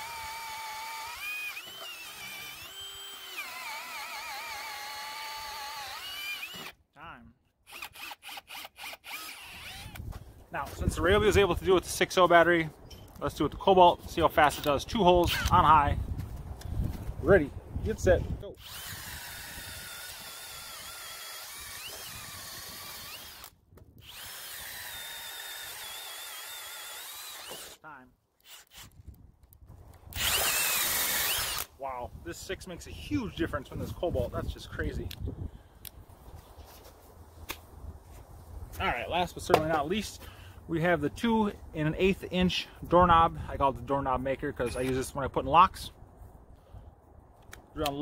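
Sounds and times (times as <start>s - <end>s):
drill motor whine: 0.0s - 6.8s, 7.7s - 10.0s, 18.6s - 27.8s, 30.2s - 31.7s.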